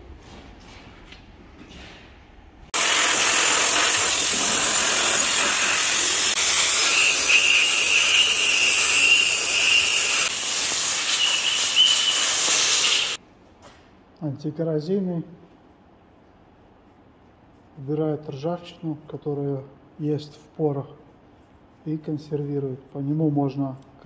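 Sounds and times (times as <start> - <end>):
aerosol can spraying hiss: 6.4 - 13.2
thin whistling tone: 6.8 - 10.3, 11.0 - 13.2.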